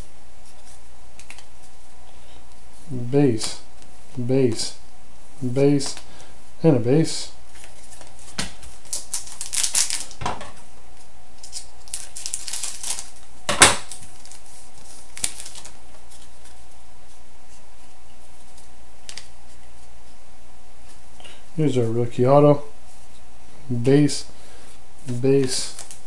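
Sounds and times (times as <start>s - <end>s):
trading cards rustling and clicking: 7.5s - 10.2s, 11.4s - 13.2s, 13.8s - 16.7s, 25.0s - 26.0s
steady hiss: 13.0s - 26.0s.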